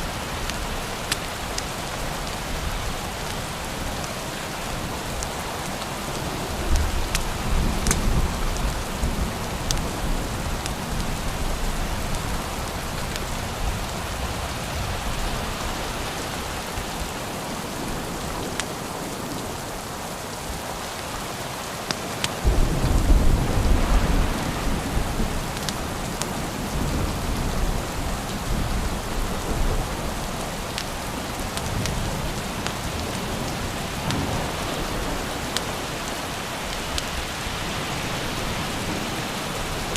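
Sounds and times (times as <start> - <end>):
heavy rain: 0.0 - 39.9
thunder rumbling: 22.4 - 39.9.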